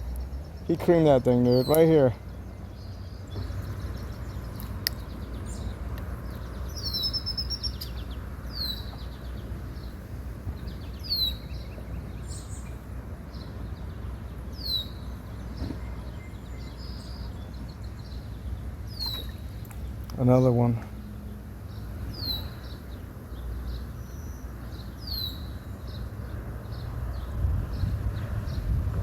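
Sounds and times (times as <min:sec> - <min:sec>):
songbird chirping: 0:00.0 - 0:28.7.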